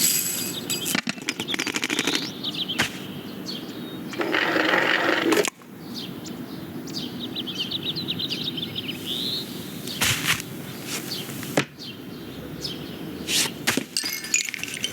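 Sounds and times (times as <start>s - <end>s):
steady background hiss: 0.0s - 1.1s, 5.6s - 14.9s
high bird-like chirps: 0.0s - 4.2s.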